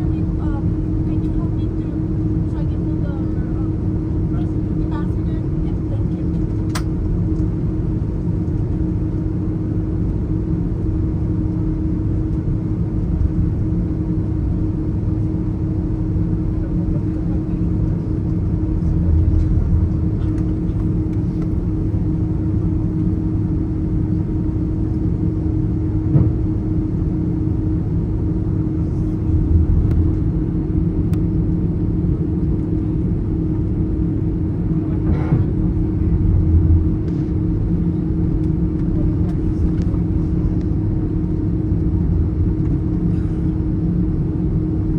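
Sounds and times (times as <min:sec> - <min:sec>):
airliner cabin engine rumble: 0:00.0 - 0:44.9
faint knocks in cabin: 0:26.1 - 0:26.5.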